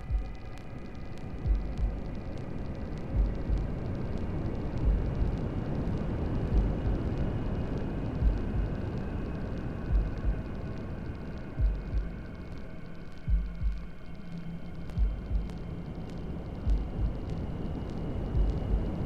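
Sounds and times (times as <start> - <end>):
heartbeat thumps: 0.0 - 0.6, 1.4 - 2.2, 3.1 - 3.8, 4.8 - 5.4, 6.5 - 7.2, 8.2 - 8.8, 9.8 - 10.5, 11.6 - 12.3, 13.2 - 13.9, 14.9 - 15.6, 16.6 - 17.4, 18.3 - 19.0.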